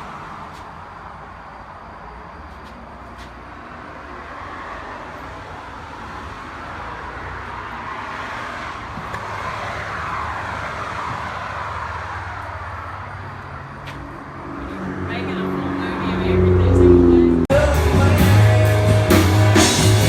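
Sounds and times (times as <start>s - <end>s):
vehicle passing by: 2.6s - 17.5s.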